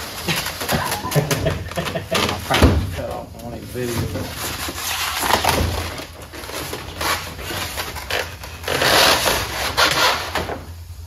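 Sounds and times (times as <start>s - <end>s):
cardboard crunching and scraping: 3.8s - 10.5s.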